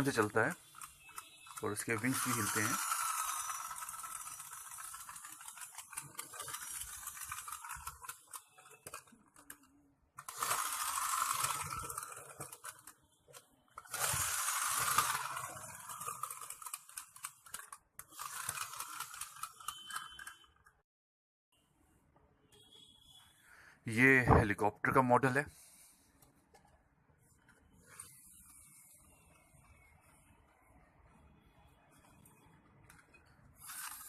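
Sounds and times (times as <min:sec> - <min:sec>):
toy aeroplane flywheel whirring: 0:00.0 - 0:20.7, 0:32.9 - 0:34.0.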